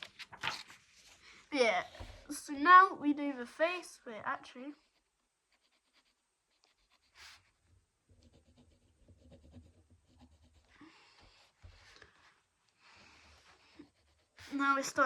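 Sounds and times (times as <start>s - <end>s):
pencil scratching on paper: 4.6s - 12.0s, 13.1s - 15.0s.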